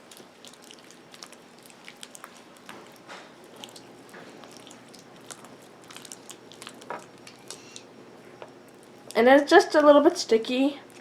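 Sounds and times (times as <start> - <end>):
slime squelching by hand: 0.0 - 7.6.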